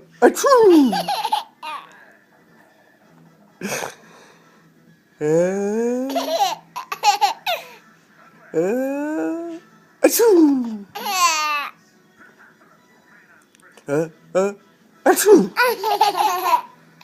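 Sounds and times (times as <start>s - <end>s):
young children laughing: 15.6s - 16.7s.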